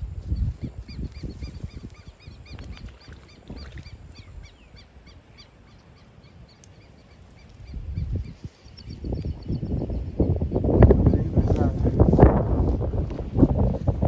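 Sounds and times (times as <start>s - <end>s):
wind rumble on microphone: 0.0s - 5.4s, 6.2s - 14.0s
bird chirping: 0.4s - 11.6s.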